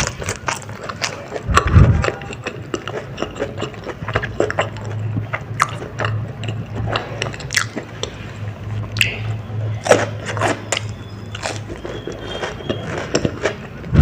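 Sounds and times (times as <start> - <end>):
steady low hum: 0.0 - 12.2
biting and chewing crunches: 0.0 - 14.0
wet mouth sounds: 0.0 - 14.0.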